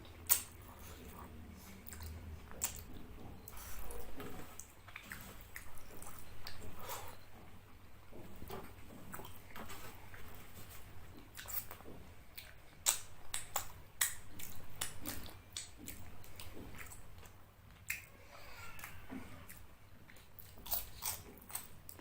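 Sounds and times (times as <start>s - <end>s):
chewing mouth clicks and smacks: 0.0s - 7.3s, 11.1s - 18.1s, 19.5s - 22.0s.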